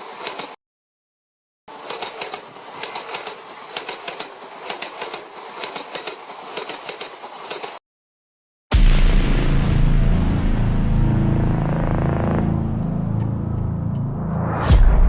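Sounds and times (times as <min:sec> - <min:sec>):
train wheels clattering over rails: 0:01.7 - 0:07.8
loud deep sound: 0:08.7 - 0:15.0.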